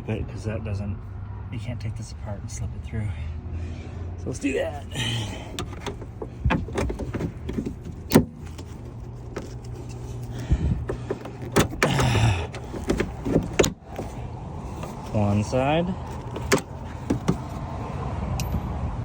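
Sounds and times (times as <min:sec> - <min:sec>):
steady low hum: 0:03.7 - 0:18.0
seat belt hardware clicking: 0:05.5 - 0:15.3, 0:16.1 - 0:17.6.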